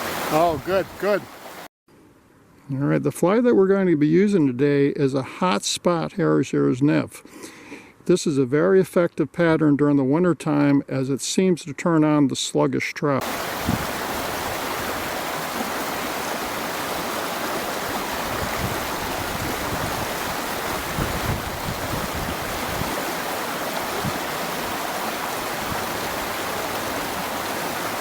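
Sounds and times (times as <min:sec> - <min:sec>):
water rushing over rocks: 0:00.0 - 0:01.7, 0:13.2 - 0:28.0.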